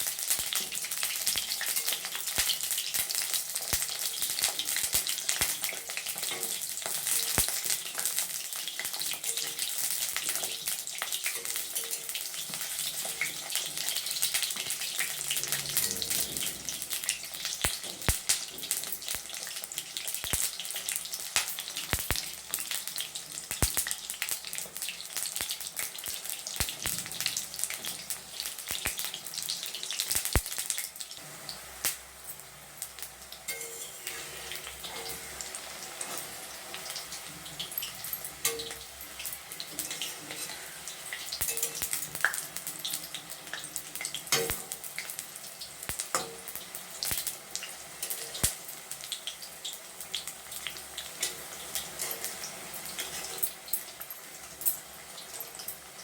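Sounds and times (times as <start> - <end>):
vegetables frying in oil: 0.0 - 56.0
sharp pops and clicks: 21.4 - 22.2, 23.5 - 23.9.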